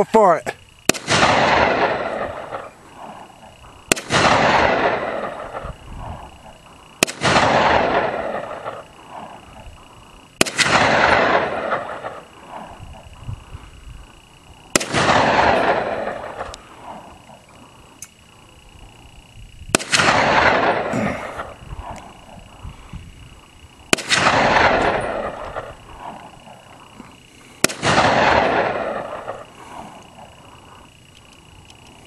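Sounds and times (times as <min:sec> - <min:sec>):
gunshots with rolling echo: 0:00.9 - 0:09.6, 0:10.4 - 0:13.1, 0:14.7 - 0:17.4, 0:19.7 - 0:22.5, 0:23.8 - 0:26.7, 0:27.6 - 0:30.3.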